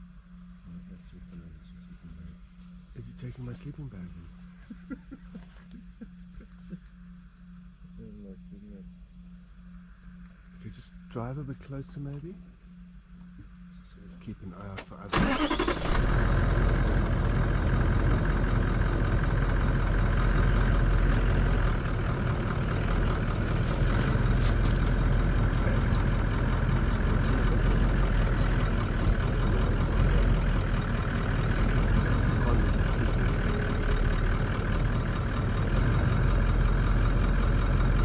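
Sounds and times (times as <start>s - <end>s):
vehicle engine running: 15.1s - 38.0s.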